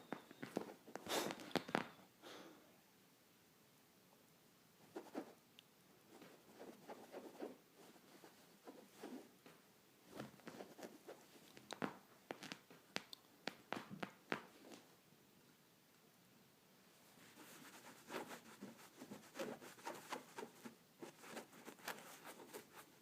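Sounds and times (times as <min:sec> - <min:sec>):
fingers scratching a surface: 0:17.2 - 0:22.9.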